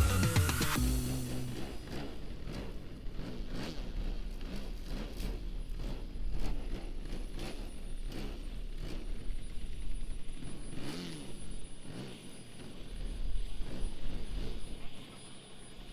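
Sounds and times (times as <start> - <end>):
model plane gas engine running: 0.0 - 11.4.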